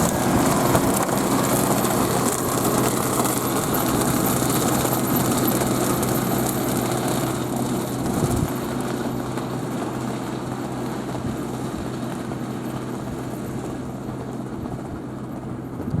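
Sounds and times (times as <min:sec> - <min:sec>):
mulcher working: 0:00.0 - 0:10.0
tractor diesel engine running: 0:00.0 - 0:16.0.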